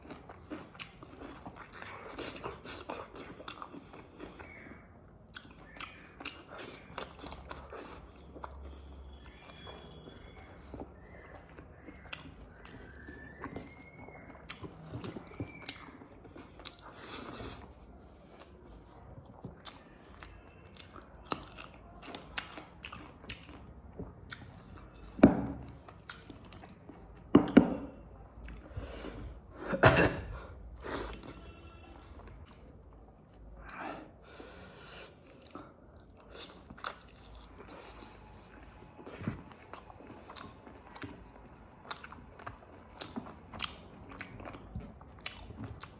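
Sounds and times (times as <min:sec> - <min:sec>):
chewing and mouth sounds: 0:00.0 - 0:45.9.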